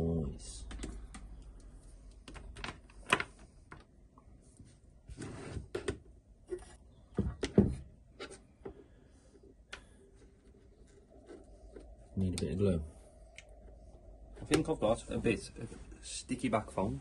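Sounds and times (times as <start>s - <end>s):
plastic parts clicking and knocking: 0.6s - 4.0s.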